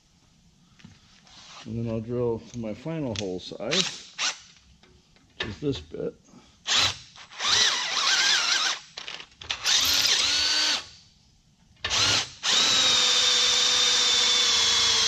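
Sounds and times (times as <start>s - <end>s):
cordless drill whine: 6.7s - 8.8s, 9.6s - 10.9s, 11.9s - 15.0s.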